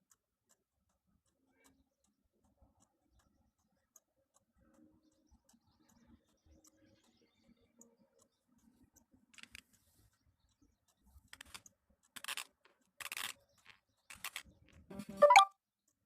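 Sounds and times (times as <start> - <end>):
teeth grinding: 12.2 - 13.3, 14.1 - 14.4.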